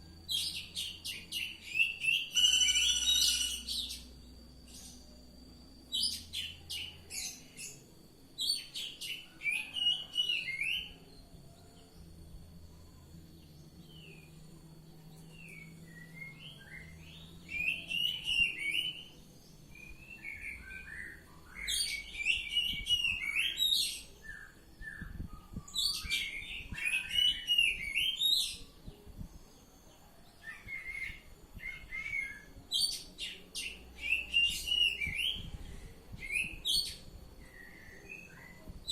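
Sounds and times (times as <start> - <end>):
bird singing whistles: 0.3 - 4.1, 15.4 - 19.1, 19.7 - 28.6, 30.5 - 35.6.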